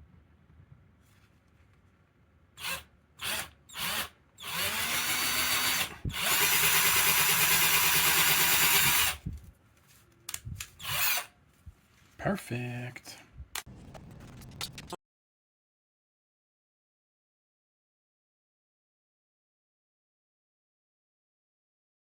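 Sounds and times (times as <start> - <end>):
cordless drill motor: 2.6 - 9.2, 10.8 - 11.3.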